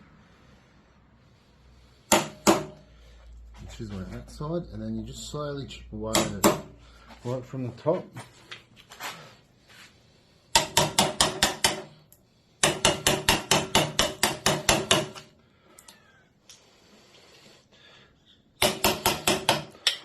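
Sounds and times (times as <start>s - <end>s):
wood chisel being struck: 2.1s - 2.8s, 6.1s - 6.7s, 10.6s - 12.0s, 12.6s - 15.3s, 18.6s - 20.0s.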